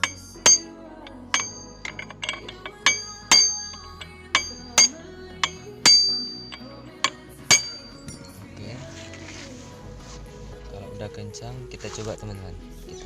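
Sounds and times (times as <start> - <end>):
hammer striking chisel on metal: 0.0 - 8.4.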